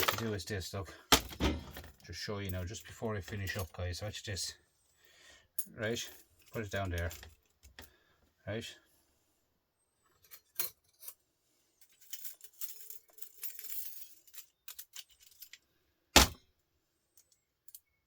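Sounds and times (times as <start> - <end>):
metal parts clicking: 0.0 - 0.4, 11.8 - 16.4.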